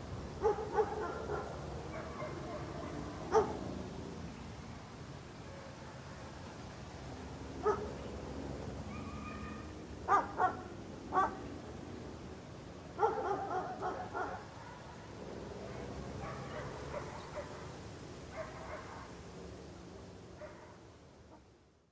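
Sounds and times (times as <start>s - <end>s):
steady background hiss: 0.0s - 21.9s
dog barking: 0.4s - 3.6s, 7.6s - 7.9s, 10.1s - 11.4s, 13.0s - 17.7s, 18.3s - 19.2s, 20.4s - 20.8s.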